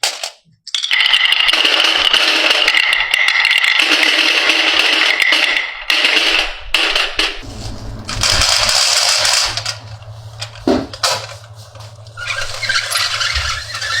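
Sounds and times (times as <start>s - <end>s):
marbles rolling on track: 0.1s - 7.5s, 8.1s - 14.0s
short rattle: 7.4s - 14.0s.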